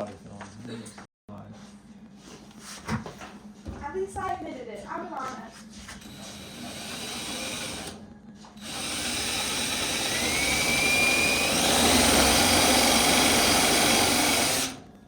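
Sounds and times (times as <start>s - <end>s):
power drill on sheet metal: 6.0s - 8.0s, 8.6s - 15.0s.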